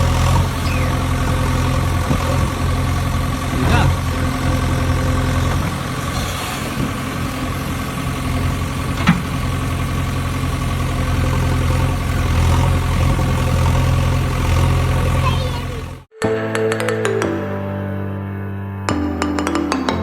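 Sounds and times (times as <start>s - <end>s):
vehicle engine idling: 0.0s - 16.1s.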